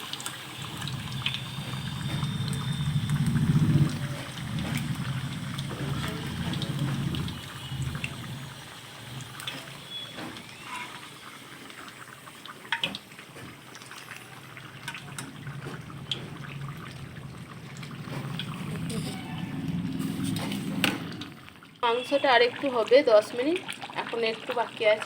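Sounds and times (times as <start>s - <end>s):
hot oil sizzling in a pan: 0.0s - 25.0s.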